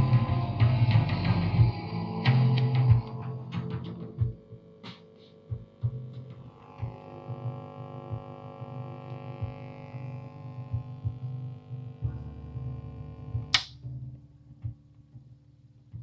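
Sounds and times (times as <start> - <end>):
low throbs: 0.0 - 4.9
amplifier mains hum: 0.0 - 13.7.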